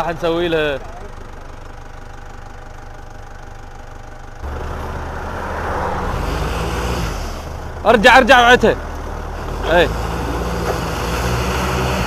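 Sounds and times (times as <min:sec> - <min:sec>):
vehicle engine revving: 0:04.4 - 0:12.0.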